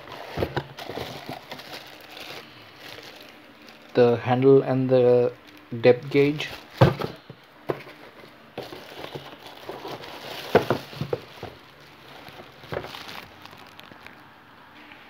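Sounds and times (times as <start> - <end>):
packaging crinkling and rustling: 0.0 - 14.3.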